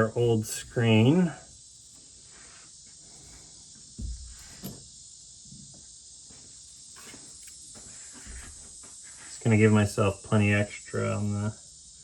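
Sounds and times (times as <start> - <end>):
steady high hiss: 0.0 - 12.0
material handling noises: 1.8 - 4.9
soft knocks: 4.0 - 4.8.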